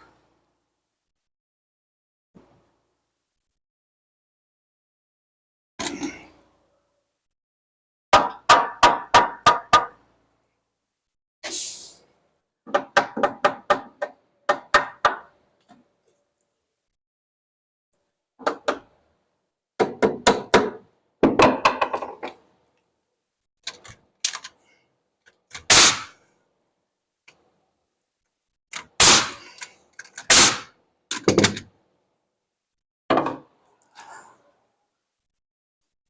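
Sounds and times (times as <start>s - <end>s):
hammer striking wood: 8.2s - 9.9s, 19.8s - 22.1s.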